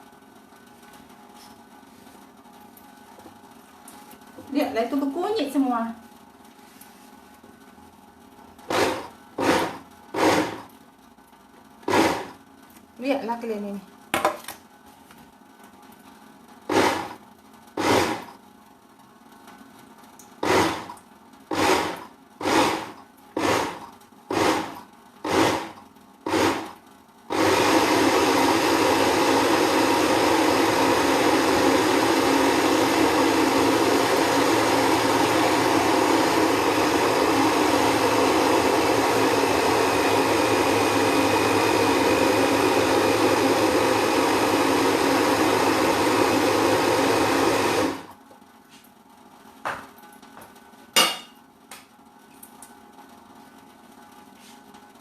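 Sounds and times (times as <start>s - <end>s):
electric blender grinding: 8.7s - 10.7s, 11.8s - 12.4s, 16.7s - 17.2s, 17.8s - 18.4s, 20.4s - 48.1s.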